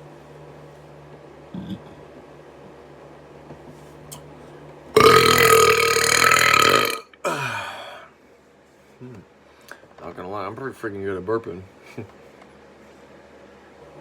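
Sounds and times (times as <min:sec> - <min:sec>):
loud burp: 0:05.0 - 0:08.0.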